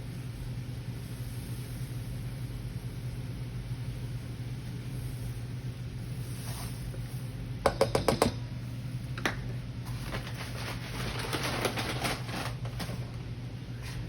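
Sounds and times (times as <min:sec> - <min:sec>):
steady low hum: 0:00.0 - 0:14.0
kitchen utensils tapping and clattering: 0:07.7 - 0:08.4.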